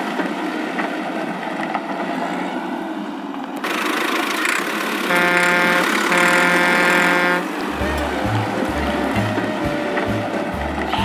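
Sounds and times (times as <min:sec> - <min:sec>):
cartoon vehicle engine: 0:05.9 - 0:11.0
long pitched tones: 0:07.4 - 0:11.0.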